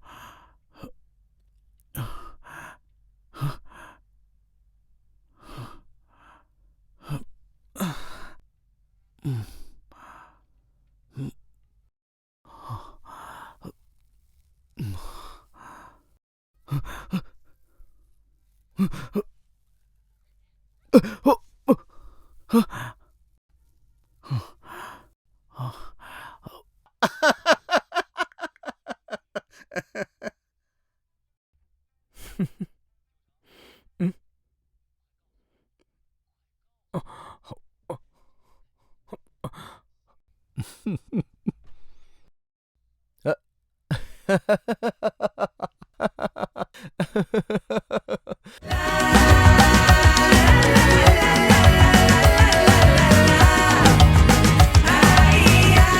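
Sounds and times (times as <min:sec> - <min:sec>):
man sobbing breaths: 0:07.8 - 0:08.4, 0:09.2 - 0:10.1, 0:14.8 - 0:16.0, 0:16.6 - 0:17.8, 0:21.0 - 0:23.0, 0:24.2 - 0:30.4, 0:40.6 - 0:41.6, 0:43.9 - 0:55.0
man sighing and moaning: 0:48.1 - 0:55.9.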